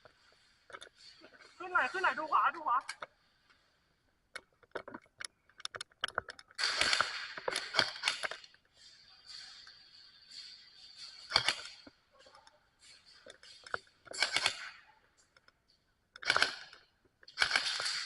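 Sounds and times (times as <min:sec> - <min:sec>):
airsoft guns firing: 0:06.6 - 0:08.3, 0:14.1 - 0:14.9, 0:16.2 - 0:18.0.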